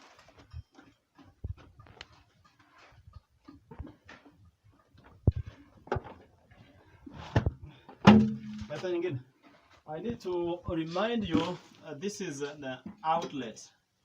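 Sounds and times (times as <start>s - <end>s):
building materials knocking and thudding: 7.2s - 8.8s.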